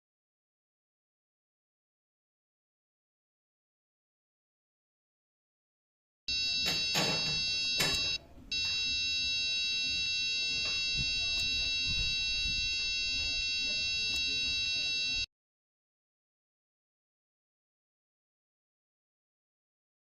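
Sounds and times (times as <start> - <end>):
high electronic buzzer tone: 6.3 - 15.3.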